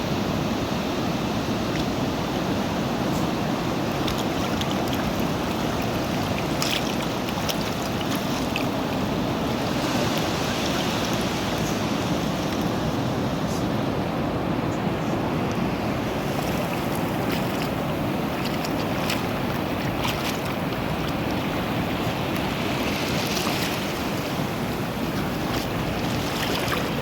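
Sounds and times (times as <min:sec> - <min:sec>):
sea waves washing: 0:00.0 - 0:27.0
wind on microphone: 0:00.0 - 0:27.0
small clicks and splashes: 0:03.9 - 0:08.7, 0:18.4 - 0:21.4.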